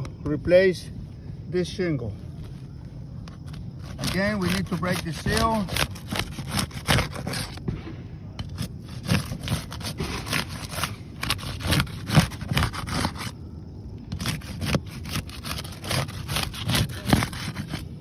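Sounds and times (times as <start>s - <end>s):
tool scraping roof shingles: 3.4s - 7.6s, 8.4s - 13.4s, 14.1s - 18.0s.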